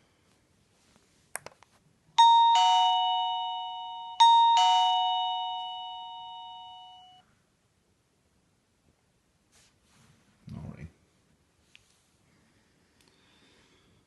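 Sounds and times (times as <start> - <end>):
two-tone doorbell chime: 2.2 - 7.2.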